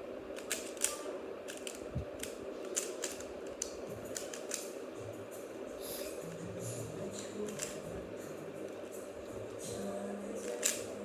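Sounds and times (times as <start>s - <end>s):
steady low hum: 0.0s - 11.0s
puzzle cube clicking: 0.4s - 4.7s, 7.5s - 7.8s, 10.4s - 10.8s.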